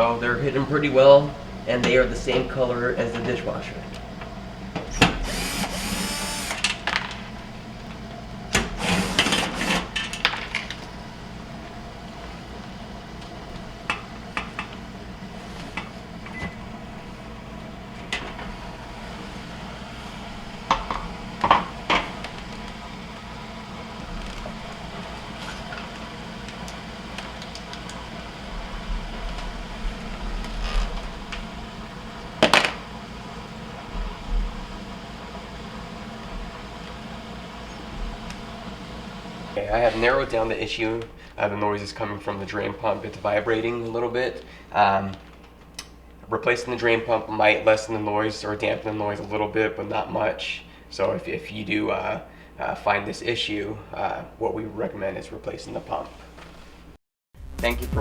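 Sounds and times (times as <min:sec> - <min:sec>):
dishwasher drain pump humming: 0:00.0 - 0:53.0.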